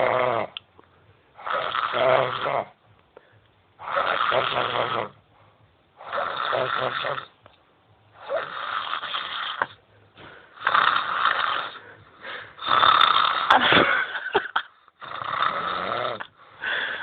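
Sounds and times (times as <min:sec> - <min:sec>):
man snoring: 0:00.0 - 0:00.6, 0:01.4 - 0:02.8, 0:03.8 - 0:05.2, 0:06.0 - 0:07.3, 0:08.2 - 0:09.8, 0:10.5 - 0:13.8, 0:14.4 - 0:17.0.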